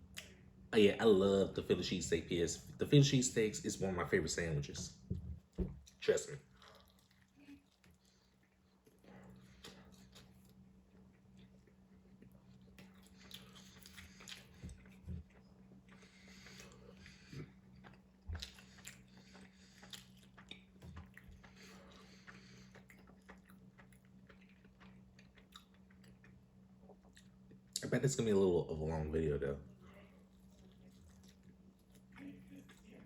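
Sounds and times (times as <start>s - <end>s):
steady low hum: 0.0s - 33.0s
person chewing sandwich: 5.2s - 27.8s, 29.7s - 33.0s.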